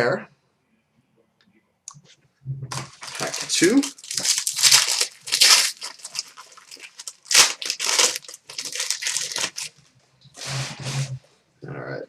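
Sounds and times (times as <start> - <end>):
card pack being torn open: 2.7 - 9.7
wrapper crinkling: 2.7 - 9.9.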